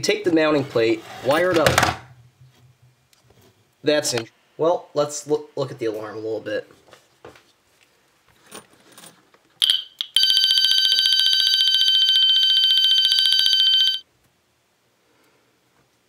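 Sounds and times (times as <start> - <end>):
fire alarm horn tone: 9.6 - 14.0.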